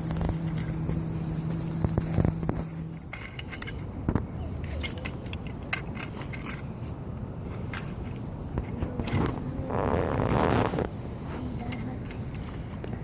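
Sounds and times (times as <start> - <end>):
toy vehicles scraping in gravel: 0.0 - 3.9
steady hum: 0.0 - 13.0.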